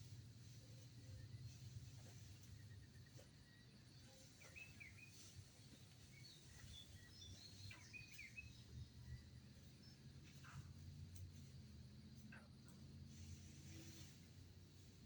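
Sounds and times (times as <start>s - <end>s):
faint birds chirping: 0.0s - 15.0s
low background rumble: 0.0s - 15.0s.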